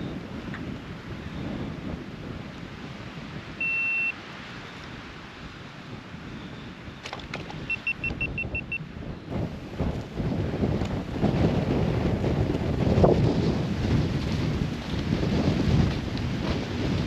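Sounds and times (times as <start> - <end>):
wind buffeting microphone: 0.0 - 17.0
electronic beep: 3.6 - 4.2, 7.7 - 8.8
short beeps: 3.6 - 4.2, 7.7 - 8.8.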